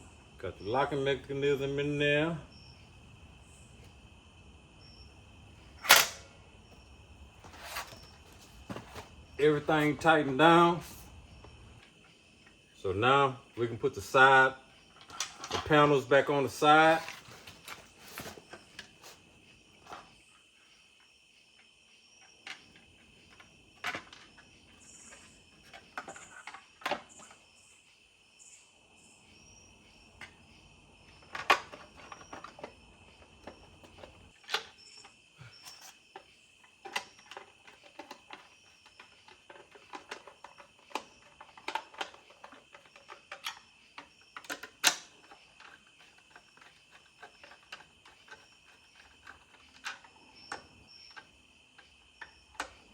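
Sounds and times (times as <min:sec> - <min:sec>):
insects chirping: 0:00.0 - 0:52.9
plastic panels clicking and knocking: 0:22.4 - 0:27.4, 0:30.2 - 0:52.9.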